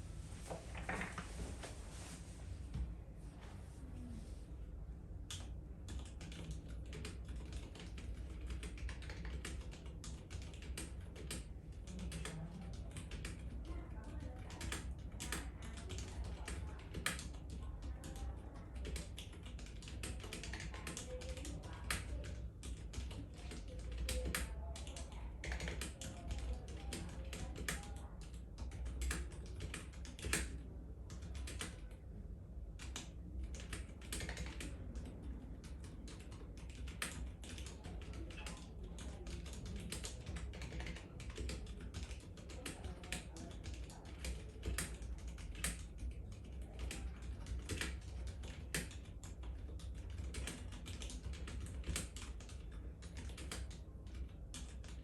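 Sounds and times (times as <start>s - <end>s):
mechanical keyboard typing: 5.3s - 32.0s, 32.8s - 55.0s.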